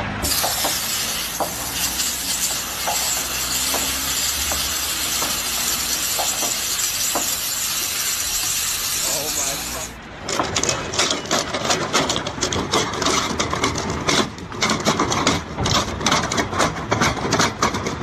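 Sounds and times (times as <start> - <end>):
loud steady hiss: 0.0 - 10.0.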